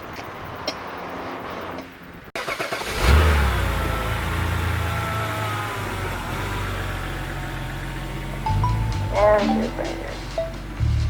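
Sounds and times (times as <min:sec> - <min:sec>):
car engine starting and running: 0:02.4 - 0:11.0.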